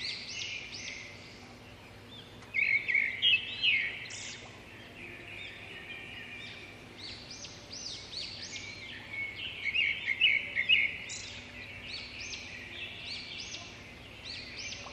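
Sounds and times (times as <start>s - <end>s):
flock of birds chirping: 0.0s - 14.9s.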